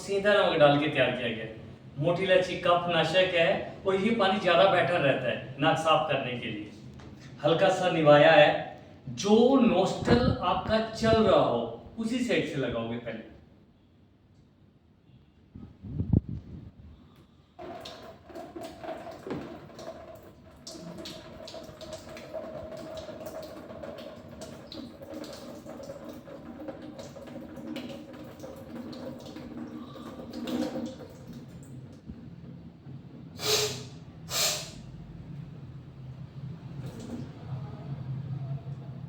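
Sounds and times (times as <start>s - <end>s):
water trickling into a basin: 17.6s - 32.1s, 36.7s - 37.5s
short loud noise bursts: 33.4s - 34.9s.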